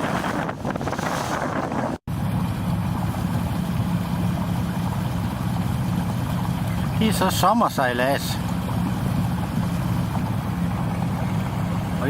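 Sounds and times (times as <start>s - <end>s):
wind buffeting microphone: 0.0s - 2.0s
boat engine droning: 0.0s - 12.0s.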